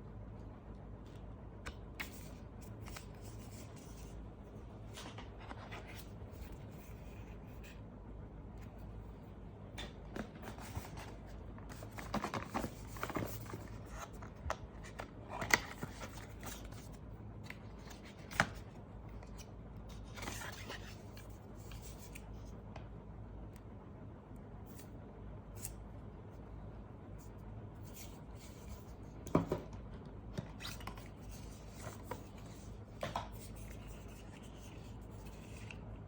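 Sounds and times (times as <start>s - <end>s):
packaging rustling and scraping: 10.2s - 16.9s.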